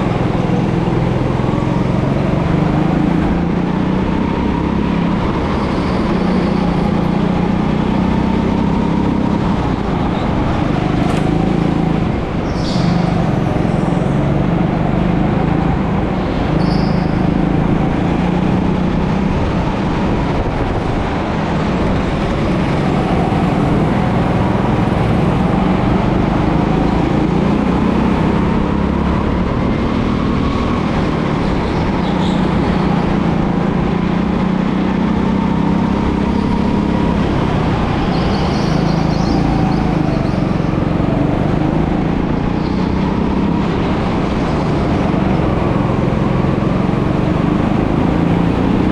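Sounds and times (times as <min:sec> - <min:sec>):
go-kart engine running: 0:00.0 - 0:48.9.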